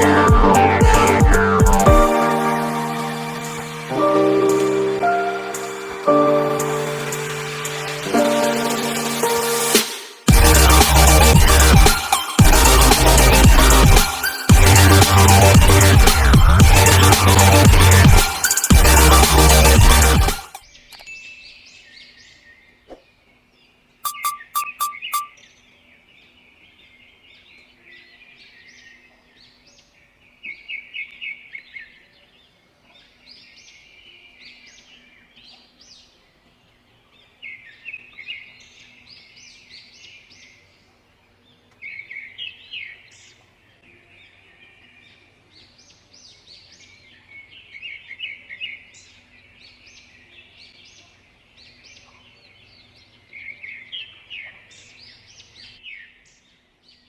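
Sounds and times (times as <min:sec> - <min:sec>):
birds chirping and trilling: 0:10.5 - 0:57.0.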